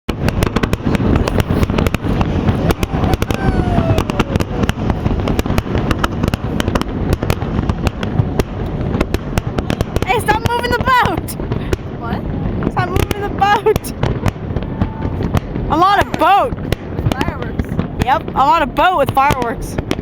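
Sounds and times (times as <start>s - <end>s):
fireworks crackling and banging: 0.1s - 20.0s
falling tone: 0.8s - 7.2s.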